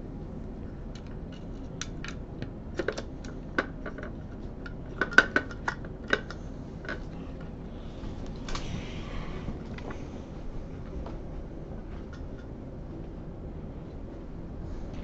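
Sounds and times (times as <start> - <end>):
small hard parts clicking and tapping: 0.9 - 7.5.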